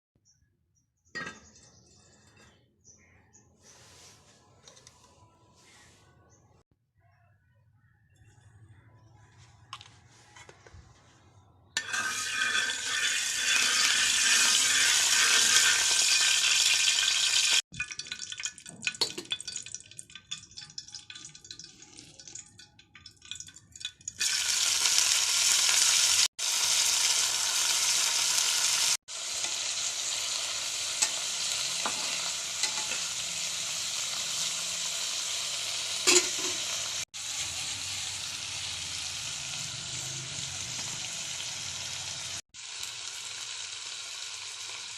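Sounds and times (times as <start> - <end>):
prawns sizzling in hot oil: 11.8 - 44.9.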